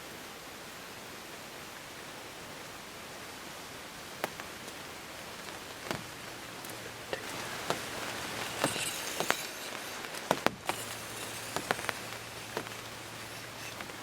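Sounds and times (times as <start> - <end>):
steady hiss of rain: 0.0 - 14.0
raindrops tapping on fabric: 4.0 - 14.0.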